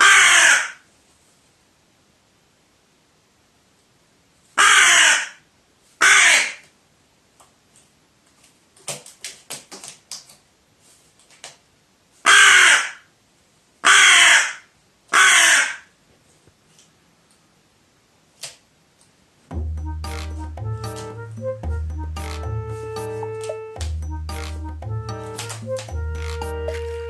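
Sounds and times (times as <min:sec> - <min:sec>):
crow cawing harshly: 0:00.0 - 0:00.8, 0:04.6 - 0:05.4, 0:06.0 - 0:06.6, 0:12.3 - 0:13.1, 0:13.8 - 0:15.9
soft short crow calls: 0:00.0 - 0:00.9, 0:04.6 - 0:05.4, 0:06.0 - 0:06.7, 0:12.2 - 0:13.1, 0:13.8 - 0:15.9.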